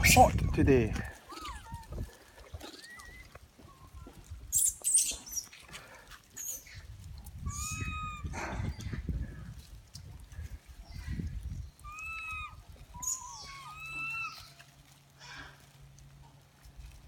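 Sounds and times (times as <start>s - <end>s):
monkey arched call: 1.2s - 2.0s, 2.6s - 5.5s, 7.5s - 8.4s, 11.8s - 14.6s
monkeys screeching: 1.2s - 5.5s, 7.5s - 8.6s, 11.8s - 14.6s.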